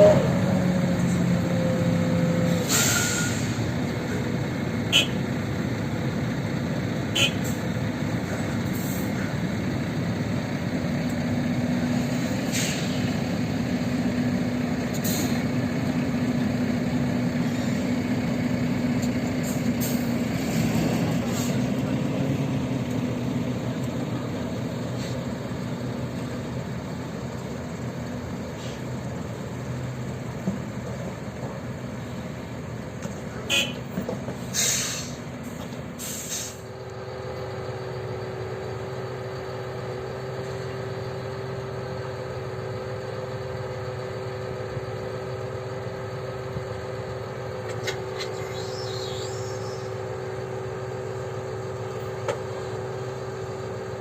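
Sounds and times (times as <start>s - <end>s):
heavy vehicle engines running: 0.0s - 54.0s
hissing air bursts: 34.4s - 35.2s, 36.0s - 36.7s.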